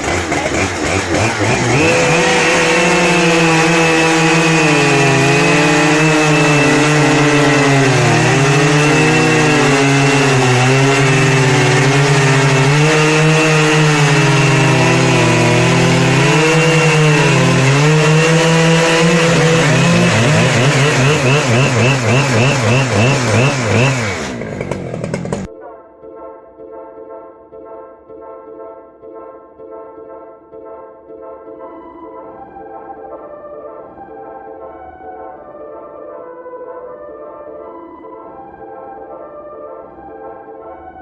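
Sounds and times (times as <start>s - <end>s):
chainsaw engine revving: 0.0s - 25.5s.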